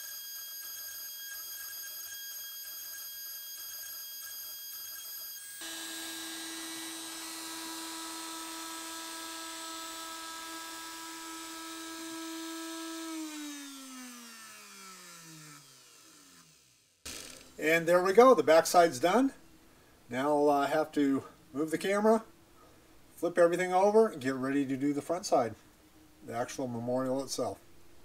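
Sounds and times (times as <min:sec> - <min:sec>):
spindle winding down whine: 0:00.0 - 0:17.6
router spindle running: 0:05.5 - 0:17.6.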